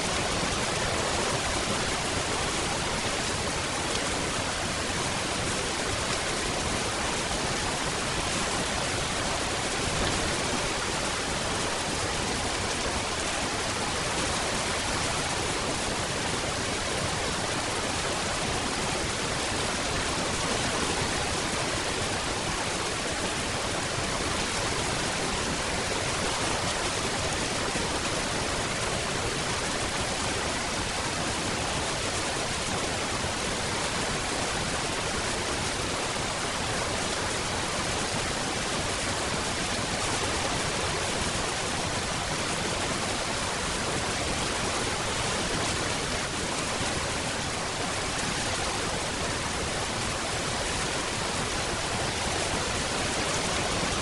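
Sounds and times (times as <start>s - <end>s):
dense rainfall hiss: 0.0s - 54.0s.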